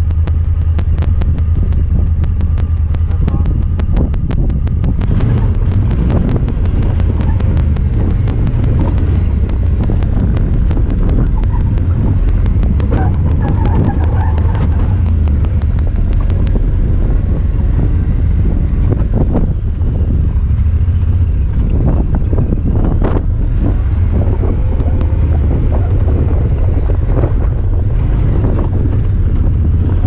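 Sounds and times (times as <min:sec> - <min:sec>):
fast regular camera ticking: 0:00.0 - 0:16.9
vehicle engine droning: 0:00.0 - 0:30.0
wind on microphone: 0:00.8 - 0:30.0.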